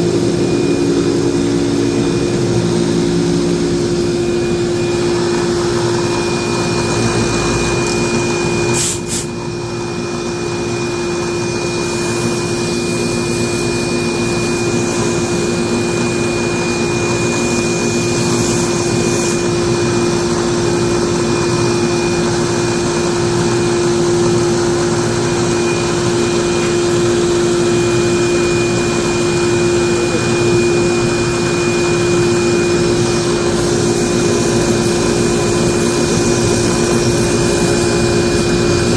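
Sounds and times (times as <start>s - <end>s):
electric motor humming: 0.0s - 8.6s, 24.8s - 38.9s.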